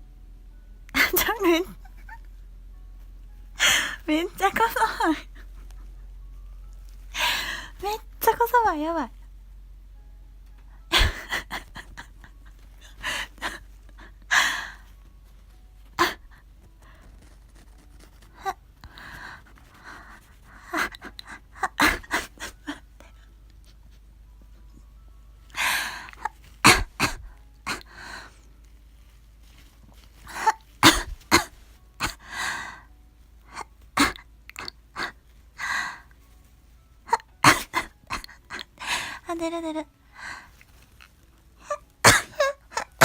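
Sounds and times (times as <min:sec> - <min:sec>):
woman sneezing: 0:42.0 - 0:42.9.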